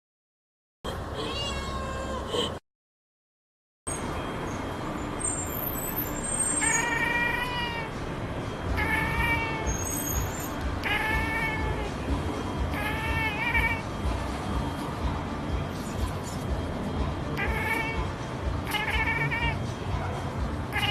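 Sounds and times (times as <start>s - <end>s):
cat chirping: 0.9s - 2.6s, 5.4s - 7.9s, 8.7s - 12.0s, 12.6s - 13.9s, 17.3s - 19.8s, 20.6s - 20.9s.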